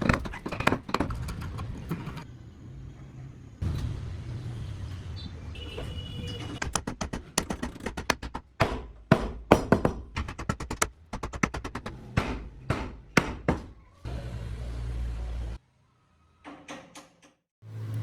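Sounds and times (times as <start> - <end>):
knocks on wood: 6.6 - 13.7.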